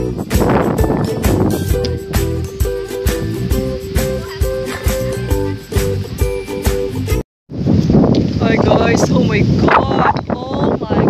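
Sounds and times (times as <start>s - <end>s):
background music with steady beat: 0.0s - 7.2s
plucked guitar: 0.0s - 7.2s.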